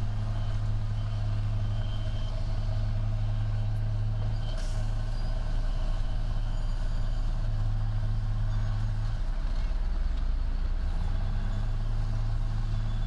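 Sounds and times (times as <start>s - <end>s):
diesel construction machinery running: 0.0s - 13.0s.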